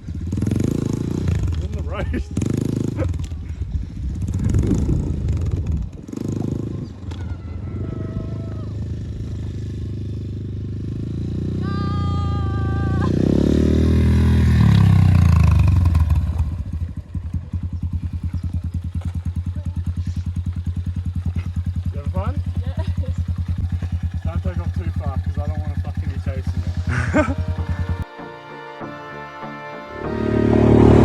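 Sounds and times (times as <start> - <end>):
farm vehicle engine running: 0.0 - 28.1
steady tone: 26.7 - 31.0.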